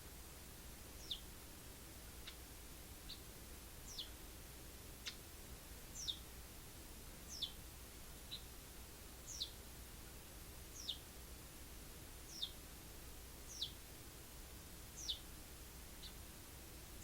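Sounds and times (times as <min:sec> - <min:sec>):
sparrow high chirps: 0:01.0 - 0:01.3, 0:03.0 - 0:04.2, 0:05.0 - 0:05.2, 0:05.9 - 0:06.3, 0:07.3 - 0:07.6, 0:08.3 - 0:08.5, 0:09.2 - 0:09.6, 0:10.7 - 0:11.1, 0:12.3 - 0:12.6, 0:13.4 - 0:13.8, 0:15.0 - 0:15.3, 0:16.0 - 0:16.3.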